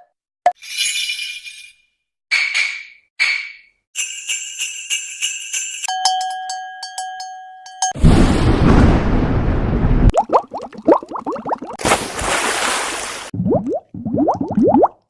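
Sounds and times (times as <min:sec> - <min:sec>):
jingle bells shaking: 0:04.0 - 0:05.9.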